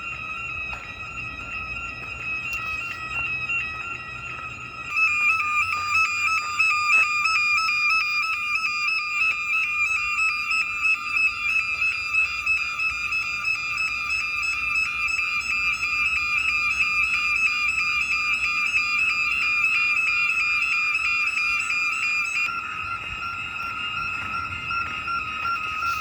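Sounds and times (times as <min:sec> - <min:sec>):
warbling fire alarm siren: 0:00.0 - 0:26.0.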